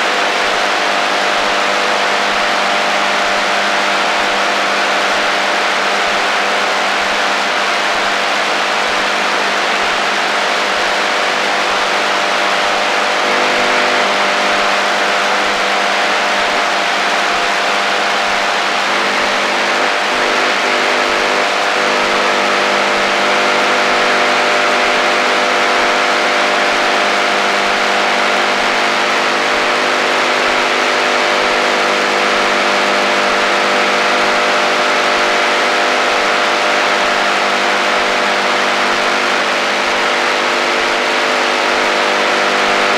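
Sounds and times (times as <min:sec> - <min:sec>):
radio static hiss: 0:06.9 - 0:30.2.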